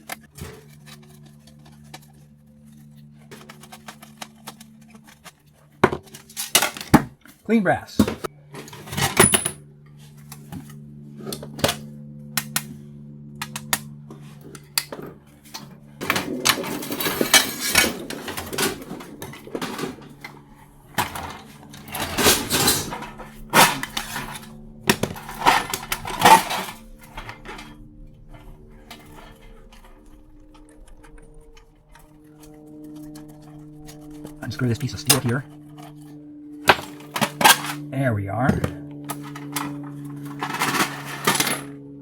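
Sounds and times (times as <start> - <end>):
metal rattling and scraping: 0.0 - 7.4, 8.0 - 11.9, 13.4 - 37.9, 38.5 - 41.7
faint low hum: 0.0 - 42.0
metal scrap clinking: 16.0 - 36.1, 36.7 - 37.9.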